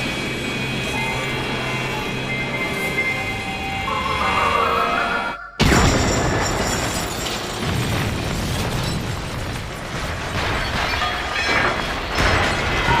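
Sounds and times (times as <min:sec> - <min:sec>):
explosion blast: 0:05.6 - 0:10.9
rumble of fire and debris: 0:05.6 - 0:13.0.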